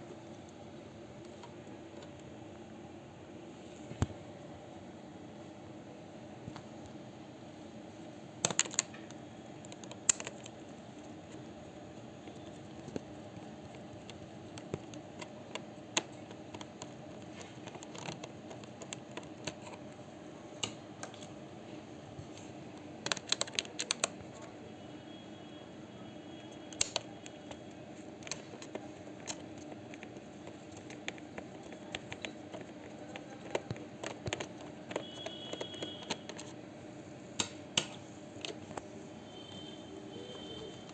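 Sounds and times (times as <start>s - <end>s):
plastic and metal parts clicking: 8.4s - 10.6s, 13.7s - 19.9s, 23.0s - 24.5s, 26.7s - 36.6s.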